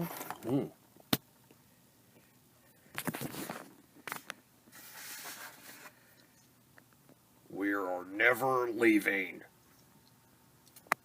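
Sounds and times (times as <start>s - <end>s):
soft rubbing hiss: 1.4s - 7.3s.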